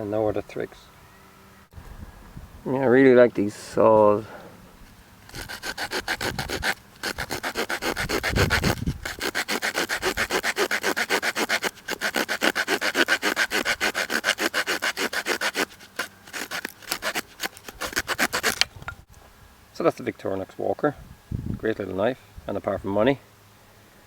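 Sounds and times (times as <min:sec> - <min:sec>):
saw rasping through wood: 0:05.2 - 0:18.7.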